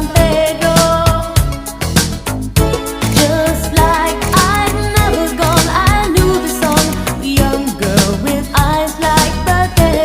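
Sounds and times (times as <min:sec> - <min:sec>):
pop song with singer: 0:00.0 - 0:10.0.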